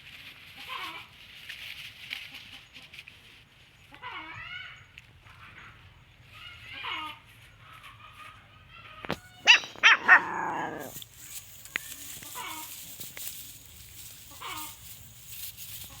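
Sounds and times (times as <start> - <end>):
dog barking: 9.4 - 10.9.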